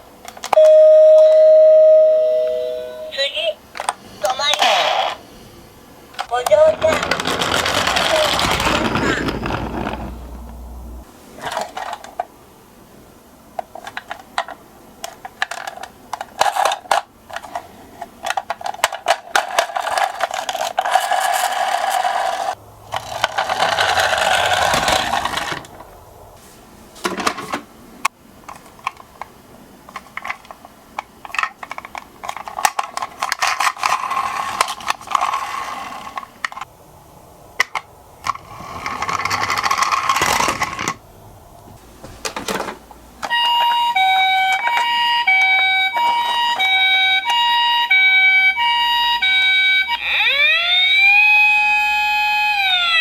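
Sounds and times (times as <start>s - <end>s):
small wheels rolling: 6.1s - 12.3s, 13.7s - 26.2s, 29.9s - 36.7s, 37.6s - 47.4s
toy cars clicking and rattling: 6.2s - 10.2s, 11.4s - 12.3s, 13.6s - 25.8s, 29.9s - 36.7s, 37.6s - 41.0s, 43.2s - 48.7s.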